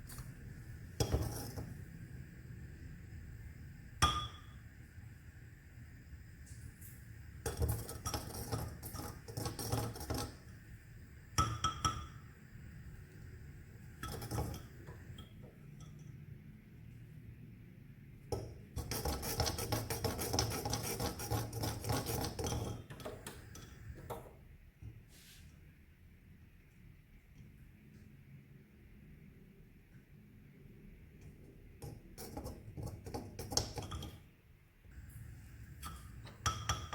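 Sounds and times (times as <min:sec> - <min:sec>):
tea boiling in pot: 0:00.0 - 0:36.9
spoon clinking and scraping pot: 0:01.0 - 0:01.8, 0:04.0 - 0:04.6, 0:07.4 - 0:10.5, 0:11.4 - 0:12.3, 0:13.8 - 0:16.2, 0:18.3 - 0:24.3, 0:31.8 - 0:34.2, 0:35.7 - 0:36.9.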